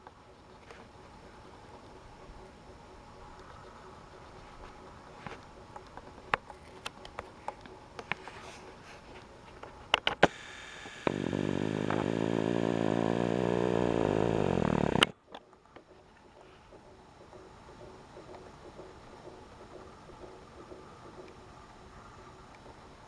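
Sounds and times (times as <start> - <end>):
air conditioner droning buzz: 0.0 - 15.2
light clicks: 9.1 - 15.1.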